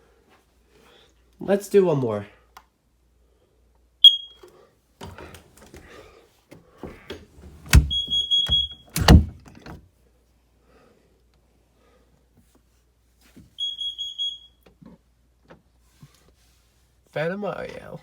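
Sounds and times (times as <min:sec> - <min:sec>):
smoke alarm beeps: 0:04.0 - 0:04.4, 0:07.7 - 0:09.1, 0:13.6 - 0:14.6
rattling handling noise: 0:06.9 - 0:09.8
loud knocks: 0:07.7 - 0:09.4.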